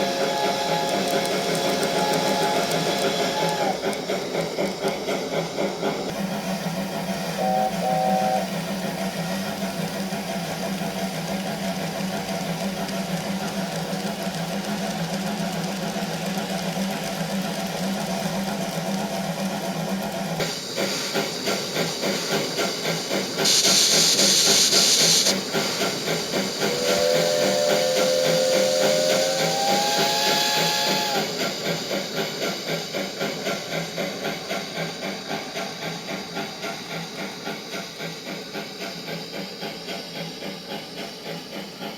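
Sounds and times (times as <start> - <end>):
chime-like steam whistle: 0.0 - 3.8, 6.8 - 9.0, 26.5 - 31.7
steam hiss blast: 0.0 - 12.6, 19.7 - 41.9
steam locomotive chuffing: 0.0 - 41.9.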